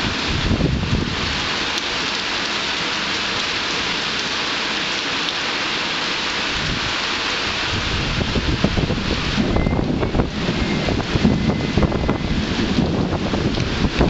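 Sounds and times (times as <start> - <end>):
wind buffeting on microphone: 0.0 - 1.5, 6.6 - 14.0
heavy rain falling: 0.0 - 14.0.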